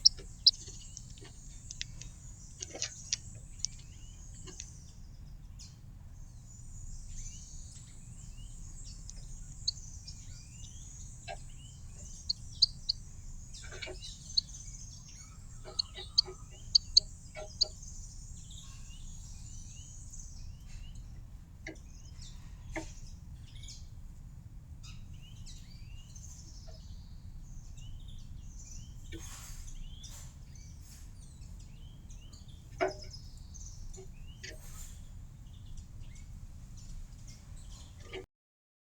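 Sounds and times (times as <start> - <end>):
low background rumble: 0.0 - 29.0
songbirds chirping: 0.0 - 38.2.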